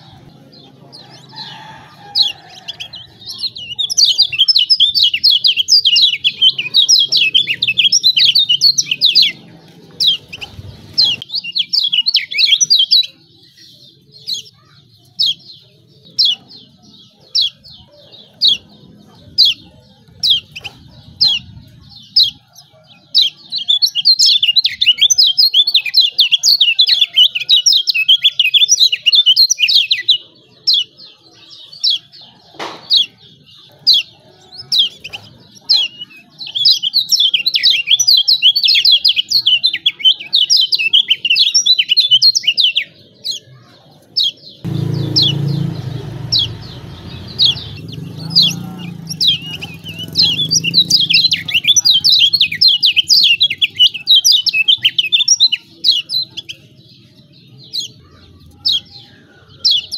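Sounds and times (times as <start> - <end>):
bird chattering calls: 44.2 - 56.6.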